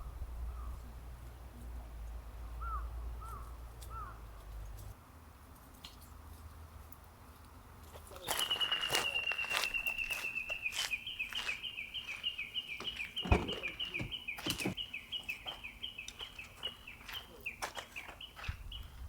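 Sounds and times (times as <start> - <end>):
high chirping animal call: 8.2 - 18.9.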